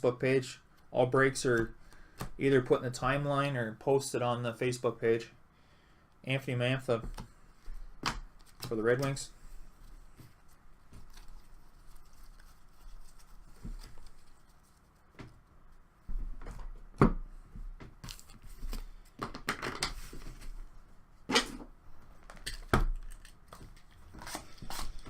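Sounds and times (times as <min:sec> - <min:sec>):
rustling: 0:09.4 - 0:16.5.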